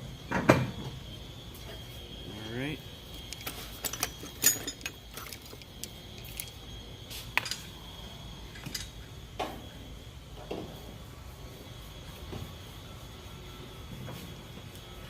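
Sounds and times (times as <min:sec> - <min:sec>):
metal tools clinking: 0:03.3 - 0:06.5, 0:07.4 - 0:07.7, 0:08.5 - 0:09.0.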